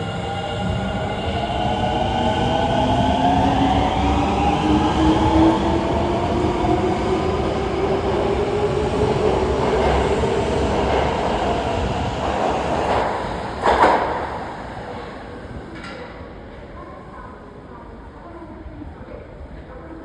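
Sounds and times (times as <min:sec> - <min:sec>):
subway train motor whine: 0:00.0 - 0:13.6.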